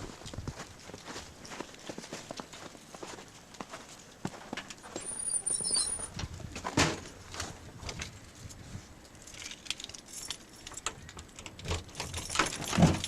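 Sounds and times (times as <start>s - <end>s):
small metallic jingles: 4.7s - 6.2s, 9.2s - 13.0s
keys jangling: 9.3s - 10.9s, 11.7s - 13.0s.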